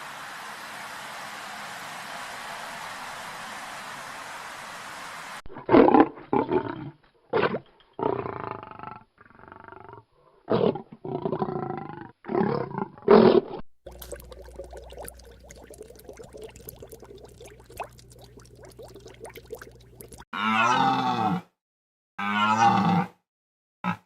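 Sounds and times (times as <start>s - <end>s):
steady hiss: 0.0s - 5.4s.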